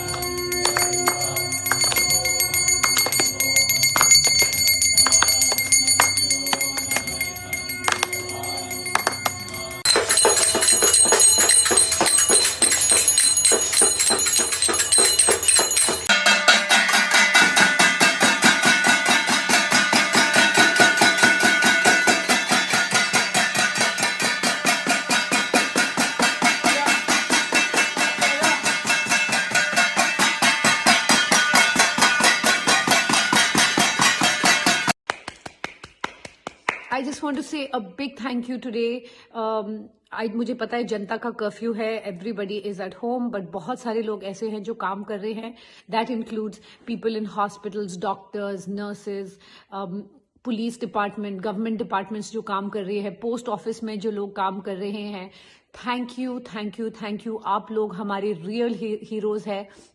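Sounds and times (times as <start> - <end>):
bells ringing: 0.0 - 35.0
metal clanging: 0.0 - 35.0.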